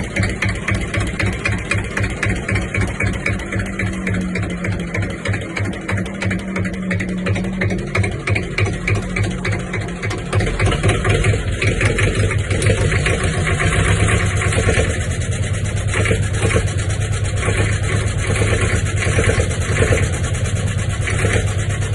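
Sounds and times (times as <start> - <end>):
diesel engine knocking steadily: 0.0 - 21.9.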